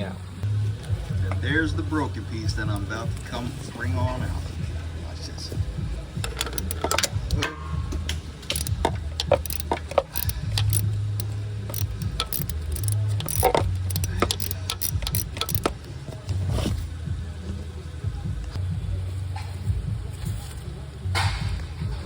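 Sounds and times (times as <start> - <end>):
metallic tapping and clicking: 6.2 - 15.8.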